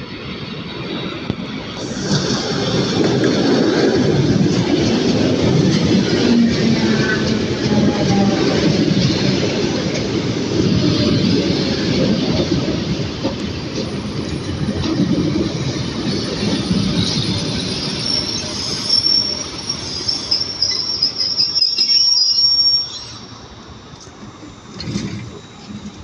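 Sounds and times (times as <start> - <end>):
train wheels rumbling on rails: 0.0 - 26.0
brake squeal: 16.0 - 23.6.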